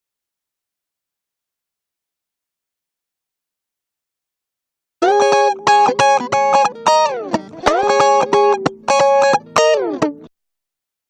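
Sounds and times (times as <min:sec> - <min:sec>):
plucked string phrase: 0:05.0 - 0:10.3.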